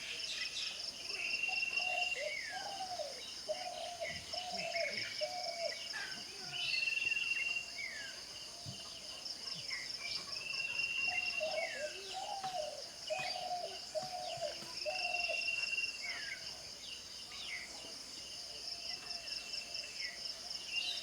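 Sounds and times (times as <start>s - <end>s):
crickets chirping: 0.0s - 21.0s
birds chirping and singing: 9.7s - 16.5s.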